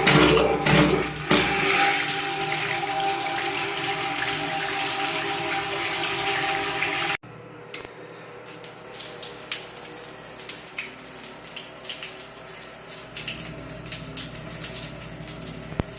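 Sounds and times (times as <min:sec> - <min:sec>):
water rushing from a pipe: 0:00.0 - 0:07.2
water splashes and drips: 0:08.5 - 0:15.9.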